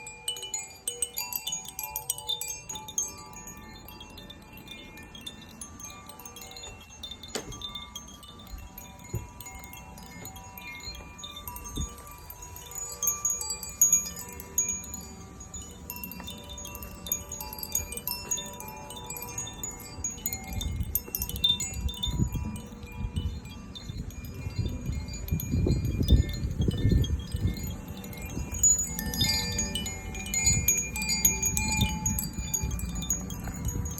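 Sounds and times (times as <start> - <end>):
tuned chimes ringing: 0.0 - 33.9.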